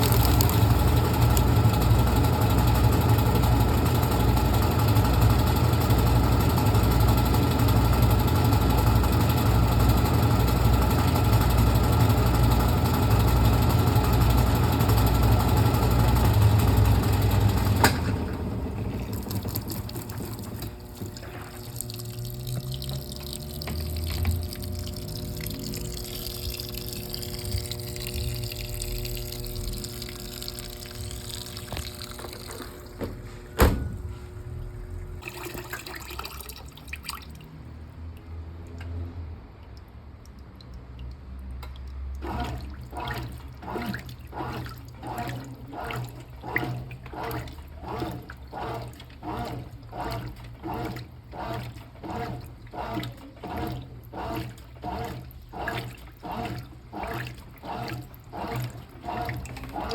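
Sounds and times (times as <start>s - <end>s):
water running into tub: 0.0s - 38.2s, 41.6s - 59.9s
washing machine swishing load: 31.0s - 36.1s, 42.2s - 59.9s.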